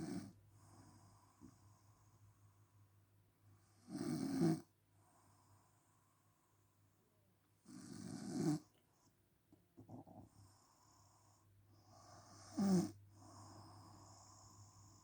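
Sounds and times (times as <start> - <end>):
quiet breathing: 0.0 - 3.9, 4.6 - 7.0, 8.6 - 15.0
woman snoring: 3.9 - 4.7, 7.7 - 8.7, 12.2 - 13.0.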